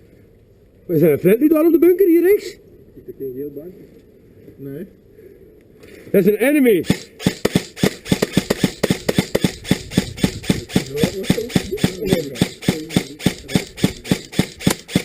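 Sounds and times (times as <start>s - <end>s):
airsoft gun shots: 6.8s - 15.0s.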